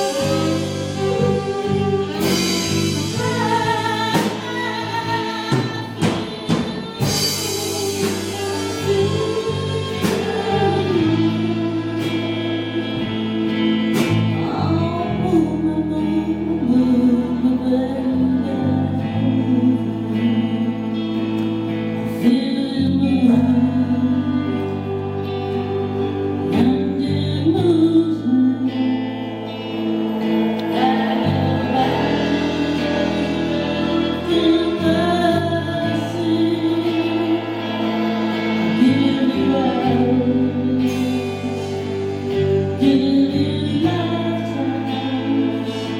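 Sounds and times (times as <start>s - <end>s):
band playing a song: 0.0s - 45.9s
person singing: 0.0s - 45.9s.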